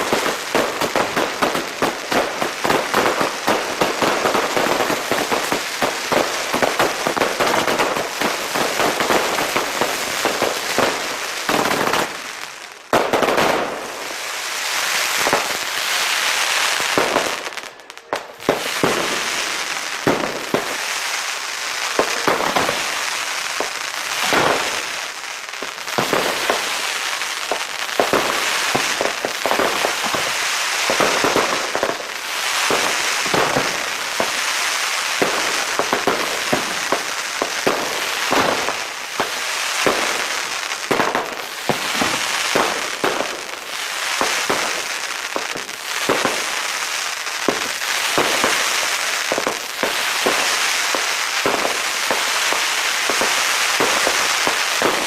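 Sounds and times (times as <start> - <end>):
fireworks crackling pops: 0.0 - 55.0
fireworks hiss: 0.0 - 55.0.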